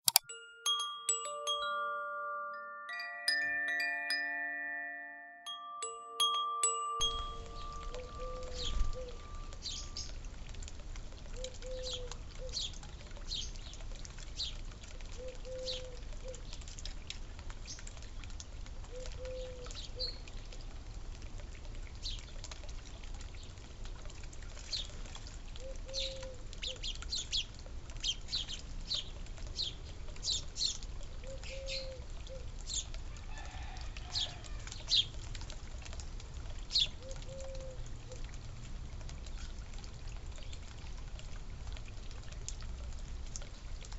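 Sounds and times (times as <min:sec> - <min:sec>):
small birds chirping: 0:07.0 - 0:10.2, 0:25.9 - 0:33.0.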